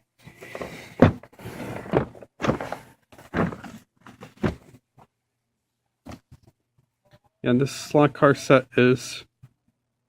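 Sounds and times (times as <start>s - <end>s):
rustling handling noise: 0.2s - 5.1s
dull thumps and knocks: 0.5s - 4.8s.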